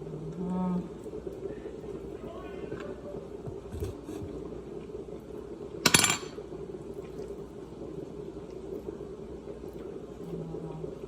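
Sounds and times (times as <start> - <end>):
steady background hum: 0.0 - 11.0
kitchenware clanking: 5.8 - 6.4.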